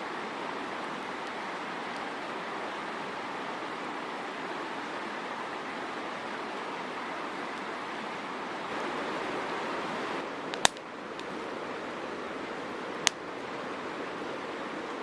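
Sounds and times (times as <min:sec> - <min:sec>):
campfire burning: 0:10.1 - 0:14.3
burning wood popping: 0:10.6 - 0:10.8.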